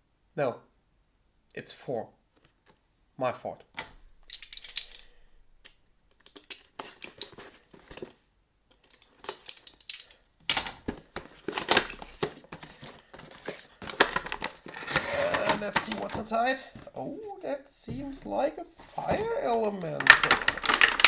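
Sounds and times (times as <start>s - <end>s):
packaging clicks and crinkles: 4.2s - 16.7s, 18.0s - 21.0s.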